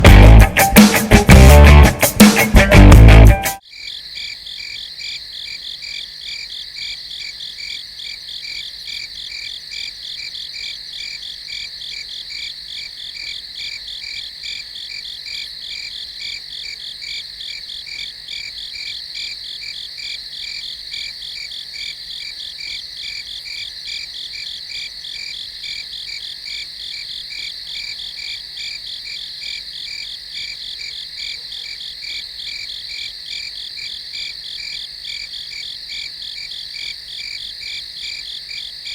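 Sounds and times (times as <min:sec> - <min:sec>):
crickets chirping: 0:03.6 - 0:38.9.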